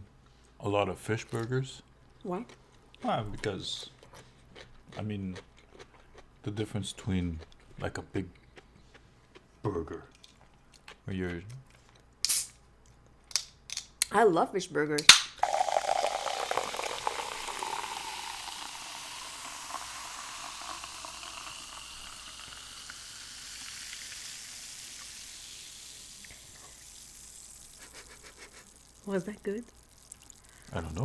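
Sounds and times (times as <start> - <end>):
can cracked open with pop: 12.2 - 12.6, 13.3 - 14.0, 15.0 - 17.2
drink fizzing: 15.1 - 31.0.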